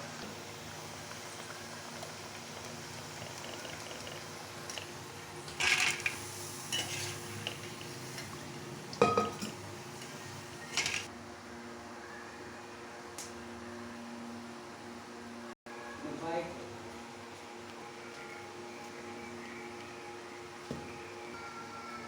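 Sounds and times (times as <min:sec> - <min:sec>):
metal utensils clinking on cookware: 0:05.5 - 0:08.4, 0:09.0 - 0:11.1.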